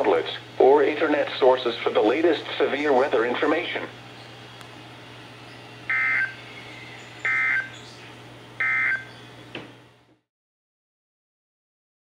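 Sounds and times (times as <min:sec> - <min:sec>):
receiver hum and hiss: 0:00.0 - 0:10.2
warbling two-tone digital data bursts: 0:05.9 - 0:06.4.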